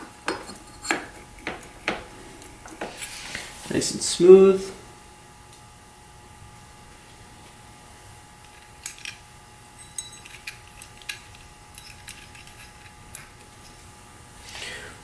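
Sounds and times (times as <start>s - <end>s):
small metal parts clinking: 8.4s - 9.2s, 9.8s - 13.9s.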